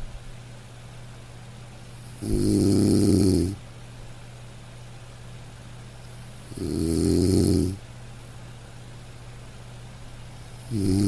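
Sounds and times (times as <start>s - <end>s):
person snoring: 2.0s - 3.6s, 6.5s - 7.8s, 10.6s - 11.0s.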